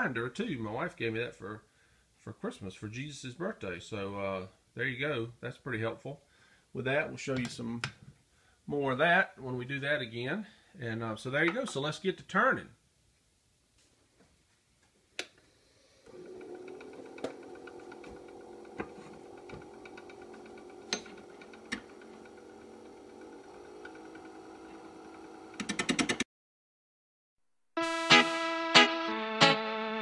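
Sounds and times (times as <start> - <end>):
wood lathe motor hum: 15.5 - 25.8.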